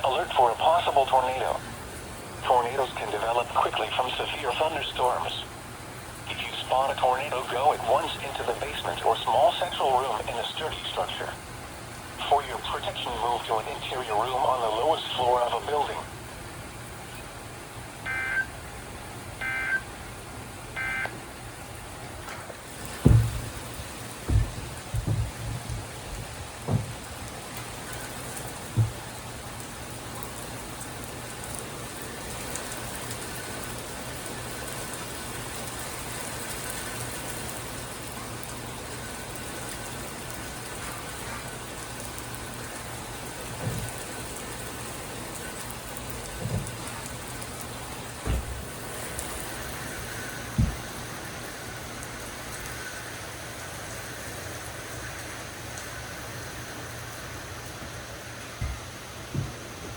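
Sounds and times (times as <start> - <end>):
steady rain: 0.0 - 59.9
short low thumps: 23.0 - 23.6, 24.3 - 27.1.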